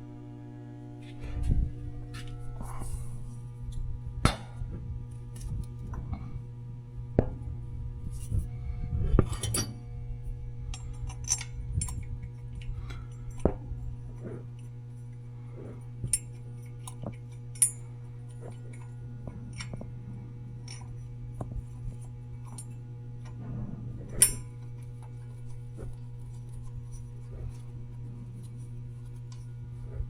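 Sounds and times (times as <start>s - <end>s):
steady low hum: 0.0s - 30.0s
hand tools clinking: 10.7s - 12.0s, 16.1s - 17.8s.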